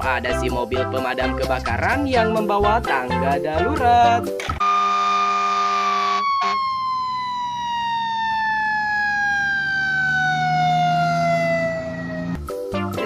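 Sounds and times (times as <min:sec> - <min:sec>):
fire engine siren winding down: 0:04.6 - 0:12.5.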